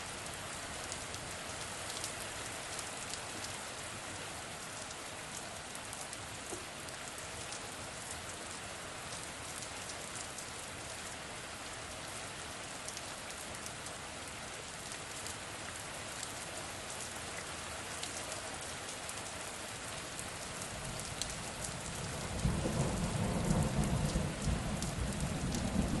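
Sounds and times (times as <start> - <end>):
rain pattering: 0.0 - 26.0
low rumble of thunder: 21.7 - 26.0.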